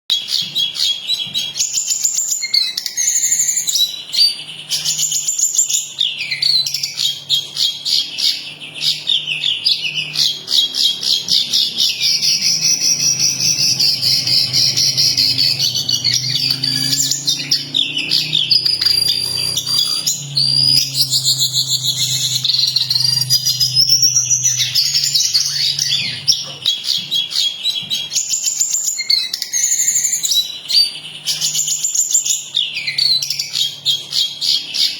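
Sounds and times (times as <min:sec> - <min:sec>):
songbird trilling and twittering: 0:00.1 - 0:34.9.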